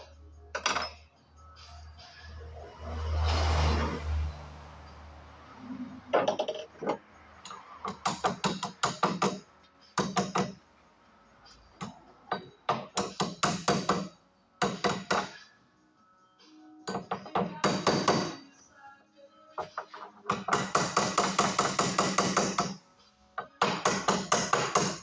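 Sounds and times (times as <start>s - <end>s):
tools tapping metal parts: 0.5s - 1.1s, 6.1s - 9.4s.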